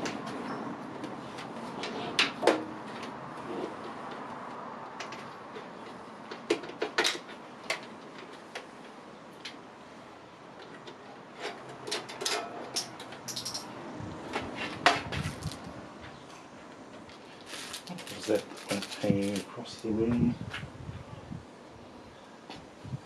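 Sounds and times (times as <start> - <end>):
computer hardware clicks and knocks: 10.6 - 13.7.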